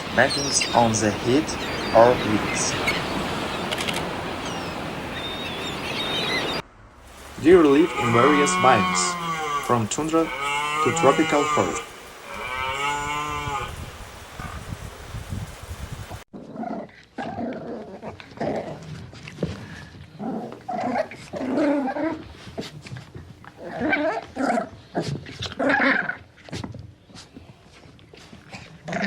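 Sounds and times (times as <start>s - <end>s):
low rumbling noise: 6.3s - 12.5s.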